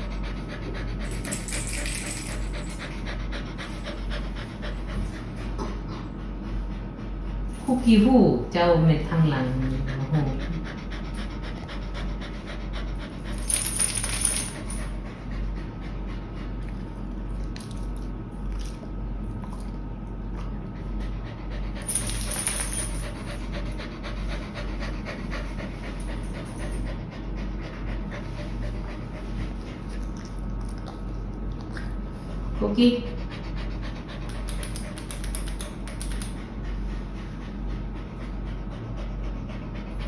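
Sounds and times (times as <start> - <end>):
dog panting: 0.0 - 7.8, 9.1 - 17.3, 19.3 - 40.0.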